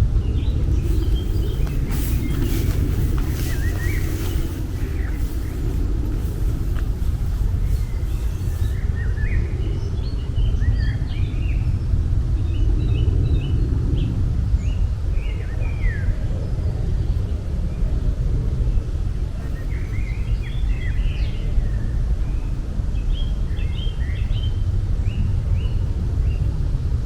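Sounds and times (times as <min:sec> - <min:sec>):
birds chirping: 0:00.0 - 0:10.4
low outdoor rumble: 0:00.0 - 0:27.0.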